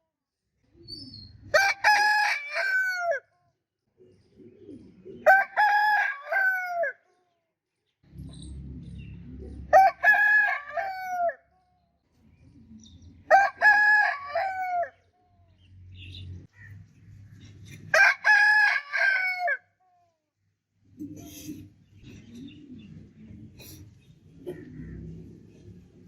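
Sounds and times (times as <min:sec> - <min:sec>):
rooster crowing: 0:01.5 - 0:03.2, 0:05.2 - 0:07.0, 0:09.7 - 0:11.5, 0:13.3 - 0:15.0, 0:17.9 - 0:19.7.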